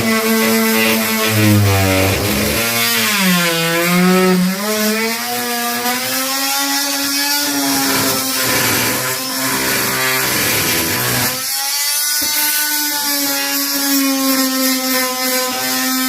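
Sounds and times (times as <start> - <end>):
power tool motor whining: 0.0 - 5.8.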